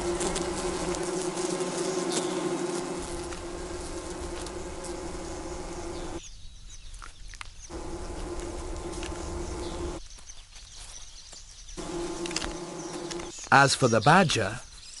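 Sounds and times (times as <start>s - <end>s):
bees buzzing: 0.0s - 6.2s, 7.7s - 10.0s, 11.8s - 13.3s.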